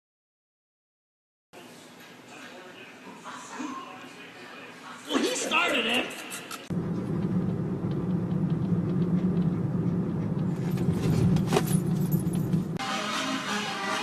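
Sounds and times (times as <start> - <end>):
low rumble: 6.7 - 12.8
music: 12.8 - 14.0.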